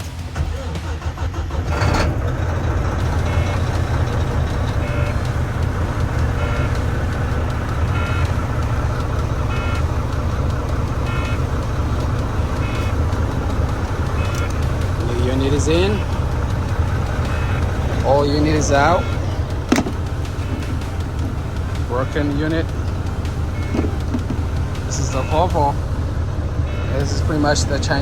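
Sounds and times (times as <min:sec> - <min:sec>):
truck diesel engine running: 0:00.0 - 0:28.0
electronic warning beep: 0:03.0 - 0:25.8, 0:26.7 - 0:28.0.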